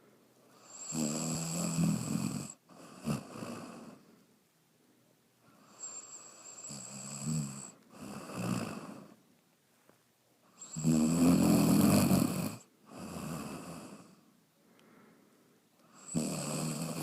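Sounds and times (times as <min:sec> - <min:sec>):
pet snoring: 0:00.6 - 0:04.0, 0:05.6 - 0:09.2, 0:10.5 - 0:14.2, 0:15.9 - 0:17.0.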